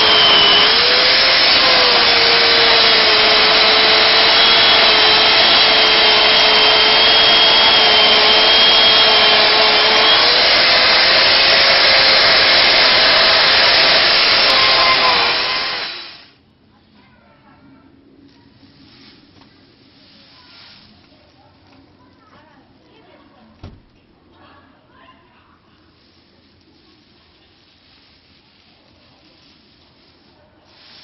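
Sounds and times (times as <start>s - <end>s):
chainsaw cutting wood: 0.0s - 16.3s.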